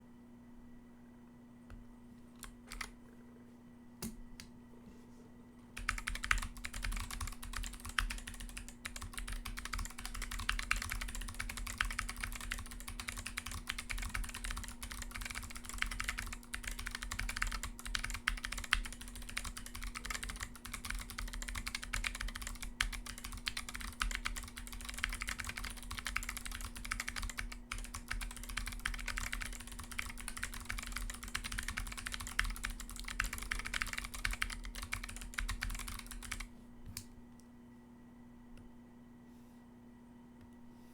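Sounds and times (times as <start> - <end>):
mechanical keyboard typing: 2.4 - 2.9, 5.8 - 36.5.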